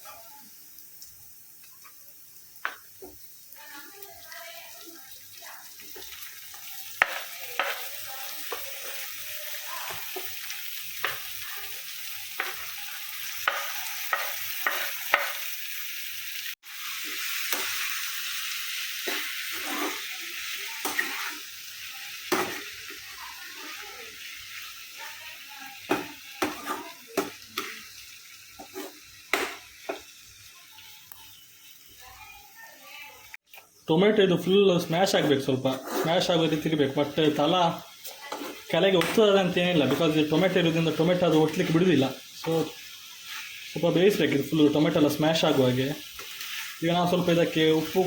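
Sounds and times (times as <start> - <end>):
vegetables sizzling in oil: 0.0 - 48.0
spatula scraping a pan: 6.0 - 10.4, 19.0 - 21.5, 22.3 - 23.8, 25.9 - 27.8, 28.6 - 30.0, 35.0 - 36.7, 37.4 - 43.7, 45.3 - 47.4.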